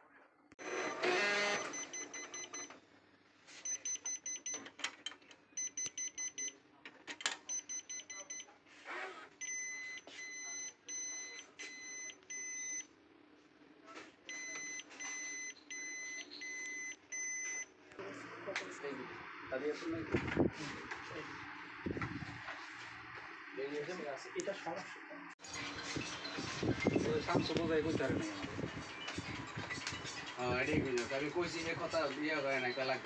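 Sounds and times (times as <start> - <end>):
copier beeping: 0.6 - 2.8, 25.6 - 33.0.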